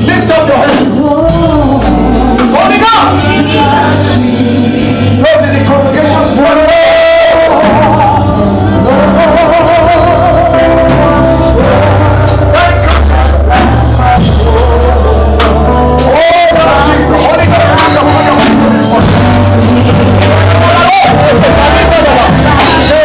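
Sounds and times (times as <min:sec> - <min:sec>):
bass: 0:00.0 - 0:23.0
person singing with vibrato: 0:00.0 - 0:23.0
drum strikes: 0:10.8 - 0:23.0.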